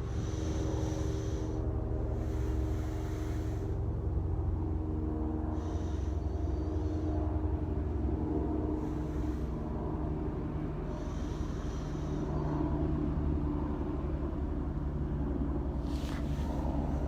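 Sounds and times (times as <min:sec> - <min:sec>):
low outdoor rumble: 0:00.0 - 0:17.0.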